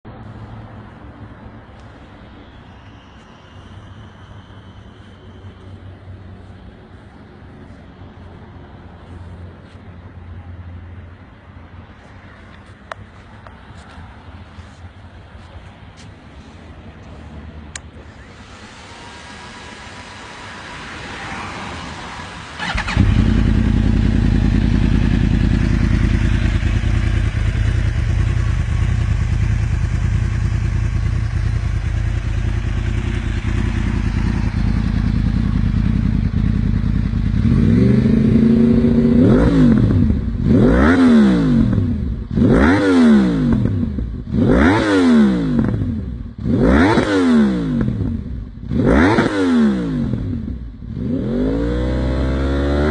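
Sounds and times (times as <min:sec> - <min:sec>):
motorcycle engine starting and idling: 0:17.7 - 0:52.9
motorcycle throttle blips: 0:22.6 - 0:51.4.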